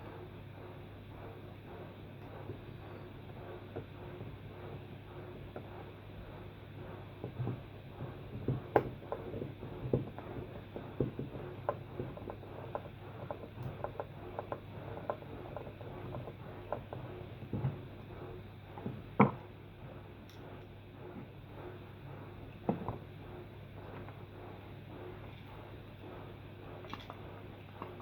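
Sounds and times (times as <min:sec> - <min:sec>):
steady low hum: 0:00.0 - 0:28.0
plastic parts clicking and knocking: 0:10.9 - 0:17.8, 0:26.9 - 0:27.2.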